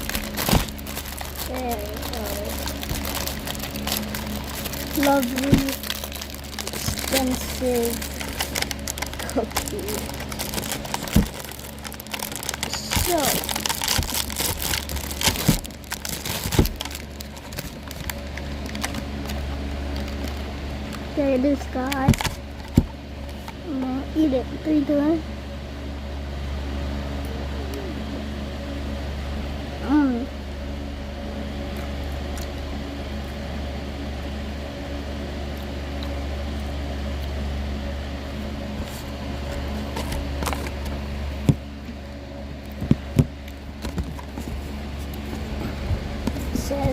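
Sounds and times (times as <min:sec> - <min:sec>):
packaging crinkling: 0:00.0 - 0:21.0, 0:22.1 - 0:23.4, 0:38.8 - 0:41.6, 0:42.6 - 0:46.9
low hum: 0:00.0 - 0:46.9.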